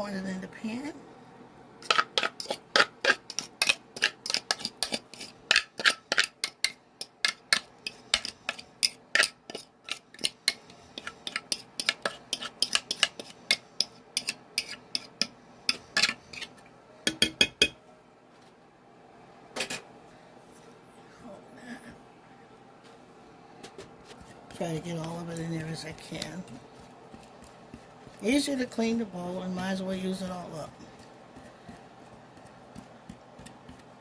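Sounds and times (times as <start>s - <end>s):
utensil scraping a mixing bowl: 1.8s - 16.6s, 24.0s - 34.0s.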